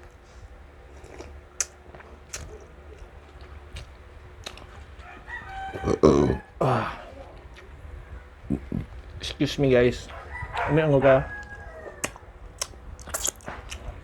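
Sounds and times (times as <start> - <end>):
rooster crowing: 5.0 - 7.4, 10.0 - 12.4.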